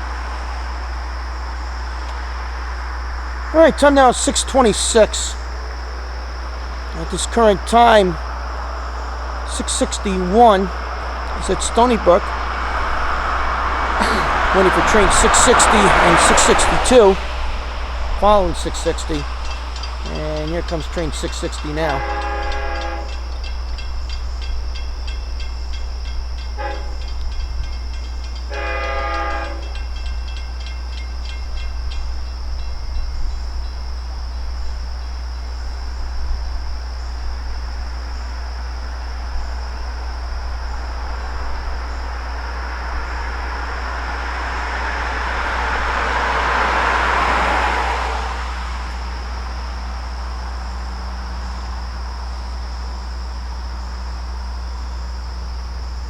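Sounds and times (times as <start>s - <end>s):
steady low hum: 0.0s - 45.9s
train passing: 0.0s - 56.0s
locomotive horn blasts: 9.4s - 24.0s, 26.1s - 30.8s.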